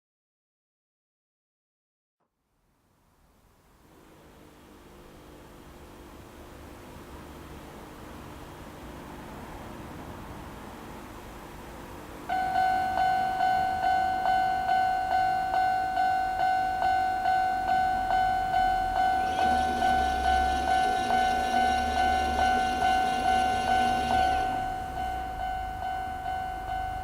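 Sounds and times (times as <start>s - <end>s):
level-crossing warning bell: 12.3s - 27.0s
low hum and rumble: 17.9s - 27.0s.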